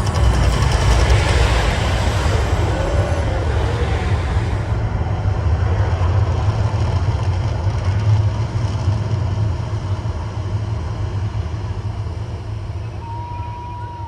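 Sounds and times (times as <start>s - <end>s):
steady high tone: 0.0s - 5.0s
deep steady rumble: 0.0s - 14.0s.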